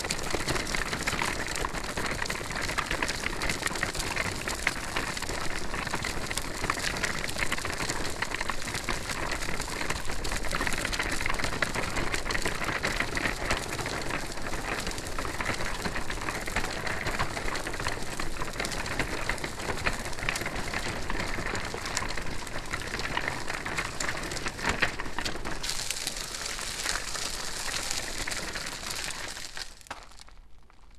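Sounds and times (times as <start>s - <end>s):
stroller wheels rolling: 0.0s - 30.9s.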